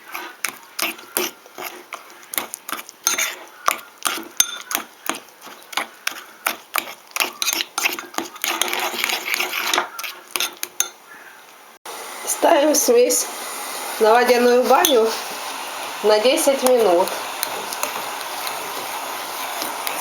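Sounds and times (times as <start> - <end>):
utensil scraping bowl: 0.0 - 11.0, 12.3 - 20.0
utensil clicking against bowl: 17.0 - 18.6.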